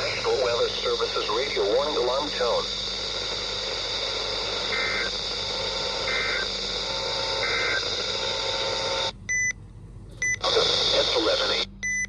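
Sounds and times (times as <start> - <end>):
radio static: 0.0 - 9.1, 10.4 - 11.7
receiver beep: 4.5 - 6.5, 7.1 - 9.6, 10.2 - 10.6
screechy digital squawks: 4.7 - 5.1, 6.0 - 6.5, 7.4 - 7.9.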